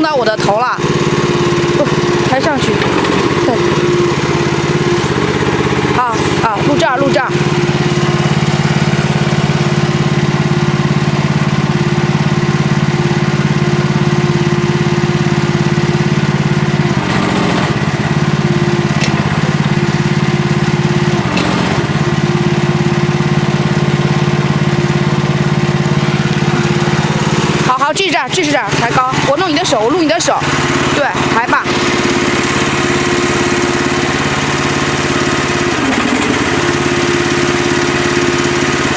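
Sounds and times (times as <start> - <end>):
small gasoline engine running: 0.0 - 38.9.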